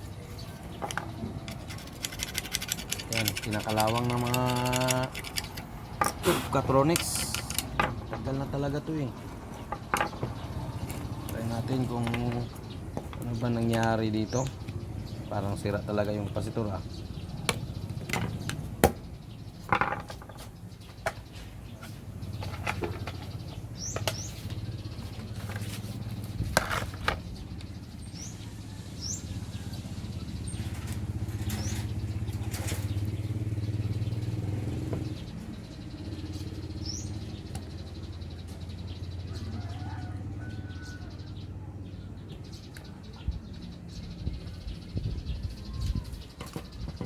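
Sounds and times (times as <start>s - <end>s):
bird chirps: 0.0s - 47.0s
small clicks and knocks: 9.7s - 11.1s.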